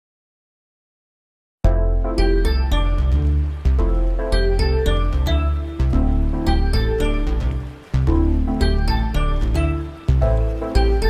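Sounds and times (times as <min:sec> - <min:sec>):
background music with heavy bass: 0:01.7 - 0:11.0.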